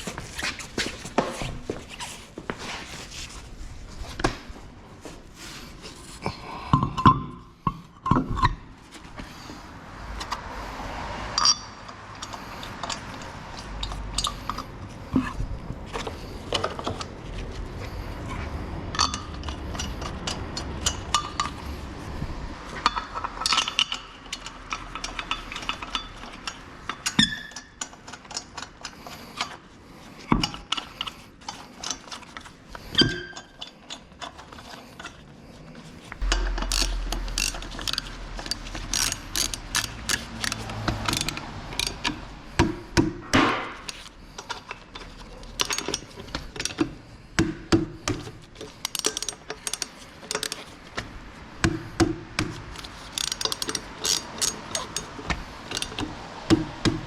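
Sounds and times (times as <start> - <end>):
tools and metal parts clinking: 11.3 - 15.3, 18.9 - 21.8, 22.8 - 29.6, 36.2 - 42.2, 43.8 - 46.9, 48.1 - 51.1, 52.6 - 56.1
heavy low thump: 36.2 - 39.3.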